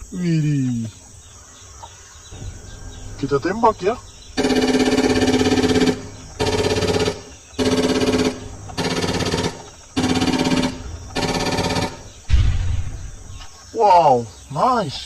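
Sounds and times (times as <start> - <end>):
toy gun machine-gun sound effect: 4.4 - 12.0.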